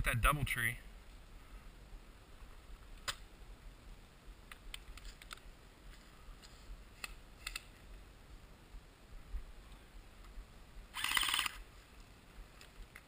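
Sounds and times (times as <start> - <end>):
faint sharp clicks and ticks: 4.4 - 5.5.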